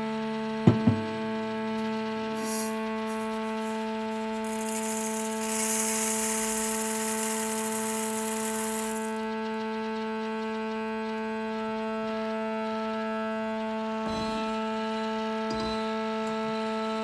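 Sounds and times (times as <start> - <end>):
held electronic drone tones: 1.8 - 9.4.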